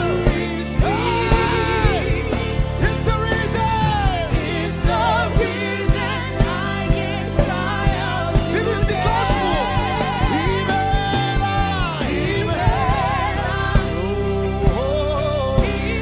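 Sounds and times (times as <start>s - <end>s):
gospel band playing: 0.0s - 16.0s
person singing: 8.4s - 16.0s.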